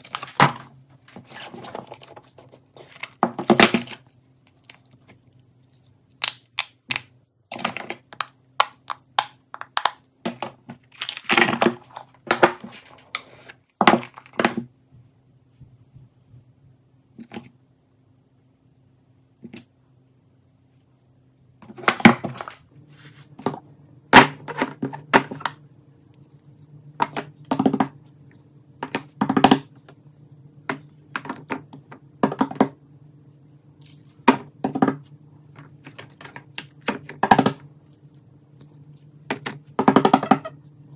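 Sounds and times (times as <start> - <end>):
faint steady hum: 0.0 - 40.9.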